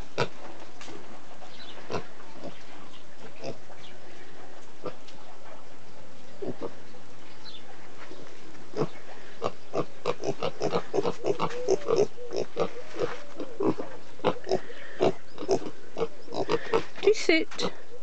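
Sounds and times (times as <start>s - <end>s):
piglets grunting: 6.4s - 6.8s, 8.7s - 17.0s.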